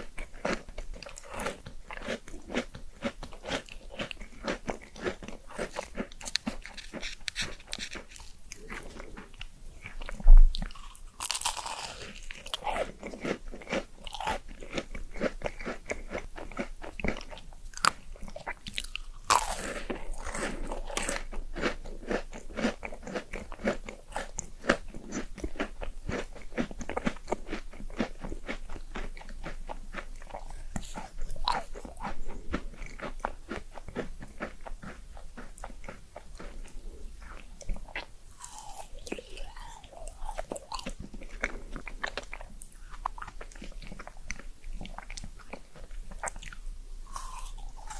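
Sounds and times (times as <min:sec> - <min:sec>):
crunchy chewing: 0:00.0 - 0:47.9.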